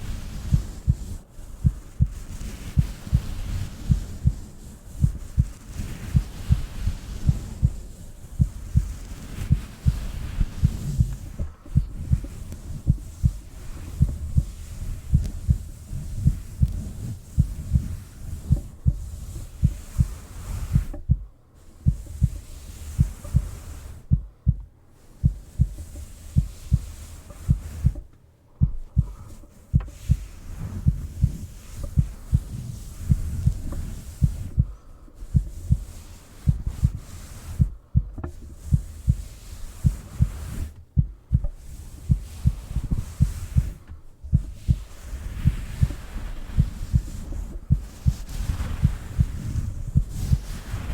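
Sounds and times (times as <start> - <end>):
heartbeat thumps: 0.0 - 50.9
soft steady hiss: 0.0 - 50.9.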